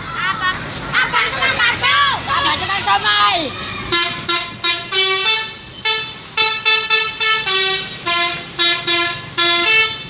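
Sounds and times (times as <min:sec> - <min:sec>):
musical air horn melody: 0:04.0 - 0:10.0.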